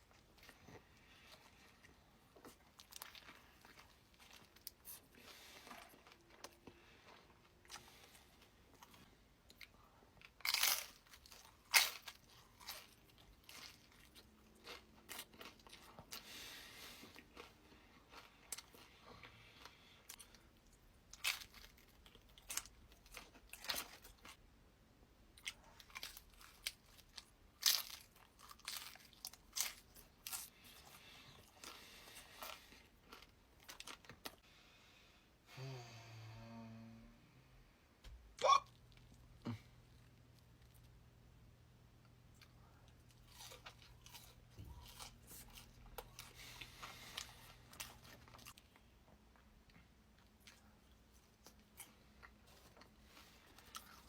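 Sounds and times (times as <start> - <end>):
chewing: 10.4 - 24.4, 42.3 - 48.8.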